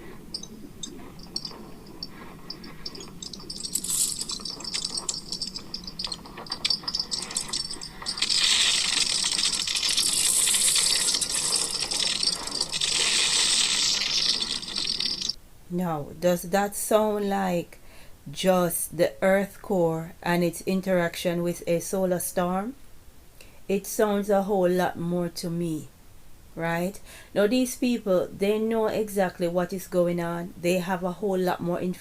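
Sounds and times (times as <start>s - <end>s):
crackling rattling clatter: 0.0s - 15.4s.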